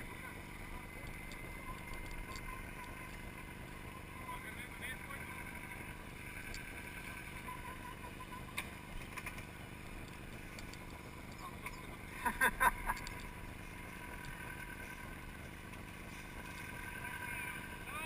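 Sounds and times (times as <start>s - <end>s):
off-road vehicle running with whine: 0.0s - 18.0s.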